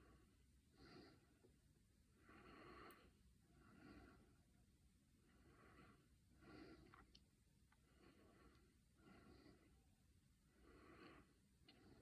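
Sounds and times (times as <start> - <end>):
faint slow breathing: 0.0 - 12.0.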